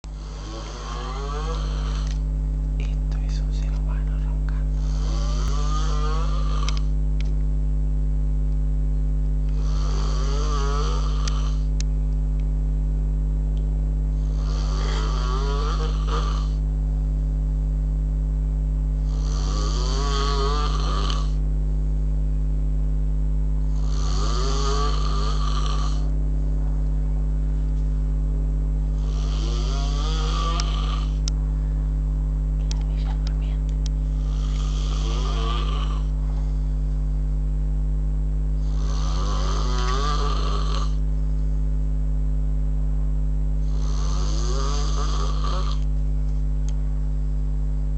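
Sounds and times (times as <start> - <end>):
steady low hum: 0.0 - 47.9
person snoring: 0.1 - 2.2, 3.1 - 7.0, 9.5 - 11.8, 14.1 - 16.7, 19.0 - 21.4, 23.7 - 26.2, 28.9 - 31.3, 34.0 - 36.7, 38.6 - 41.0, 43.6 - 45.9.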